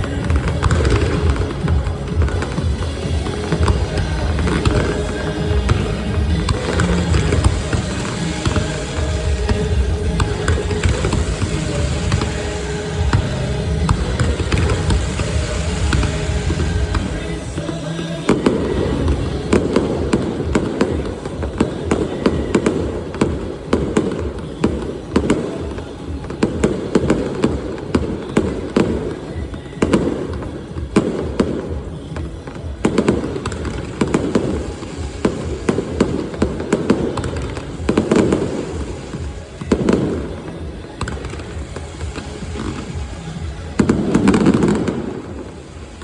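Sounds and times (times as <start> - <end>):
fireworks bangs: 0.0 - 46.0.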